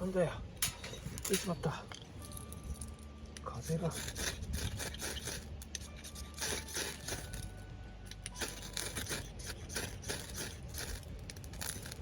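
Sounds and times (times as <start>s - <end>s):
wind rumble on microphone: 3.9s - 6.1s.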